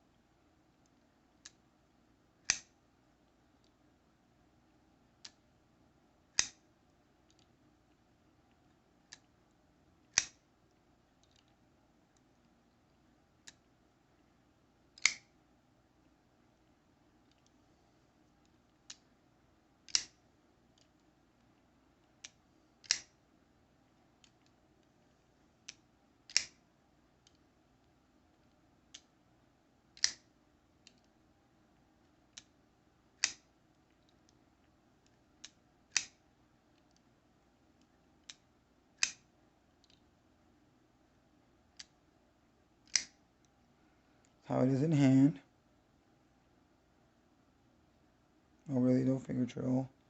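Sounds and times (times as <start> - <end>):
folding knife light click: 15.0 - 15.3, 25.7 - 26.6, 30.0 - 30.2, 35.4 - 36.2, 42.8 - 43.2.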